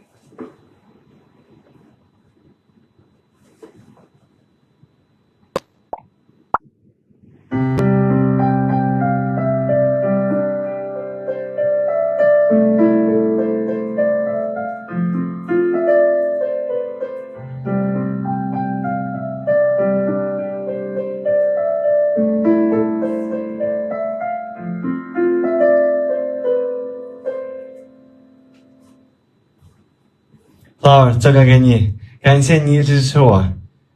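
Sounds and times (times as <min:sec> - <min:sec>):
piano melody over chords: 0:07.5 - 0:29.0.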